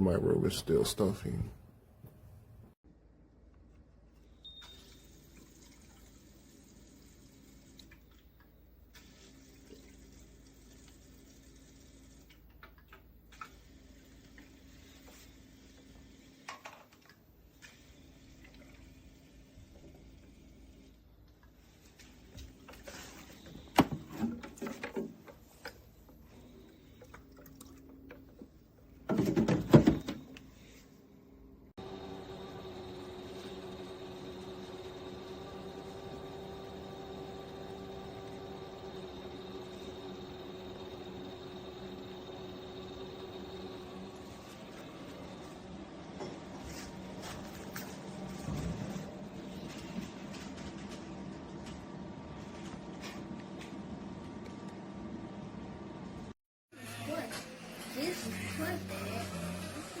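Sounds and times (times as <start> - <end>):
knocks and clatter of handling: 22.7 - 25.8, 27.0 - 30.4.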